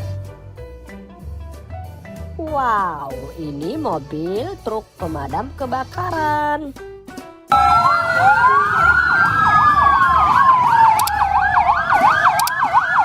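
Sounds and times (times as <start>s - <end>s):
wailing siren: 7.5s - 13.0s
yelping siren: 7.5s - 13.0s.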